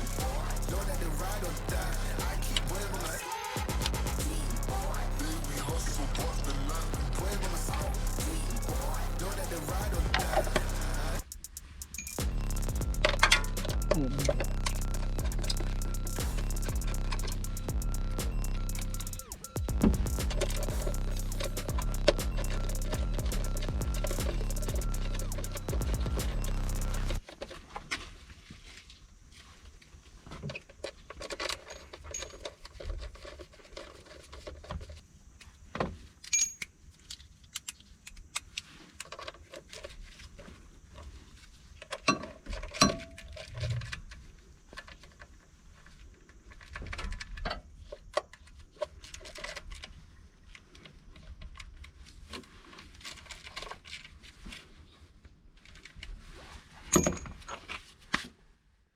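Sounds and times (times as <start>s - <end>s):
metal tools clinking and rattling: 31.2s - 32.8s, 36.3s - 36.7s, 56.9s - 57.7s.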